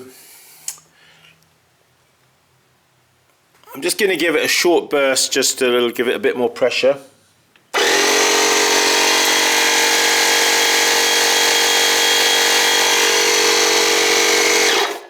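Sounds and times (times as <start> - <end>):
air compressor humming: 7.7 - 15.0.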